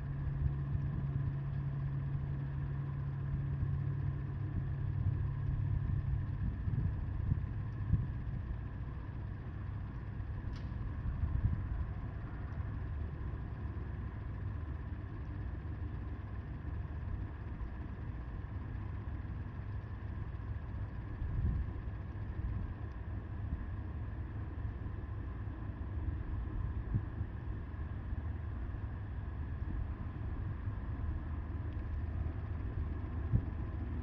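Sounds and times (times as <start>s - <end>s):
wind buffeting microphone: 4.6s - 8.5s.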